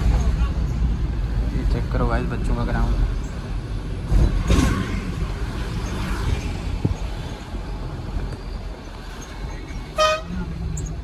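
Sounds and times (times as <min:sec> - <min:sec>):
truck engine and road rumble: 0:00.0 - 0:11.0.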